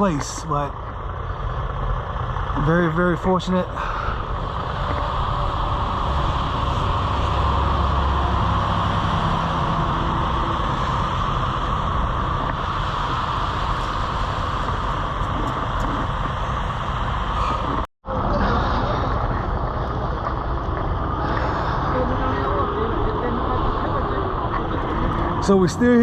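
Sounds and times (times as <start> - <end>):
motor vehicle rumble: 0.0 - 26.0.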